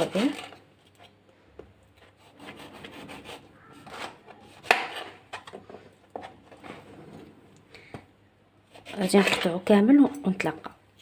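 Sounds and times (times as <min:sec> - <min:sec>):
knife sawing through lemon: 0:02.2 - 0:03.5.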